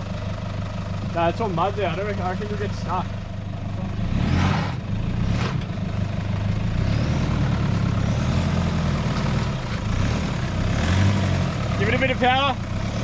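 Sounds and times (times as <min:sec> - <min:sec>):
vehicle engine running at low revs: 0:00.0 - 0:13.0.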